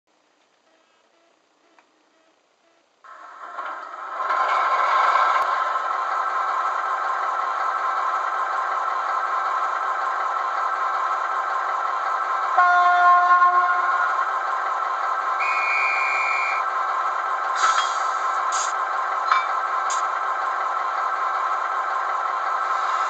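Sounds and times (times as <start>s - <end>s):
model diesel engine through speaker: 3.1s - 23.0s
locomotive horn: 12.6s - 14.2s, 15.4s - 16.6s
high whistle: 15.4s - 16.6s.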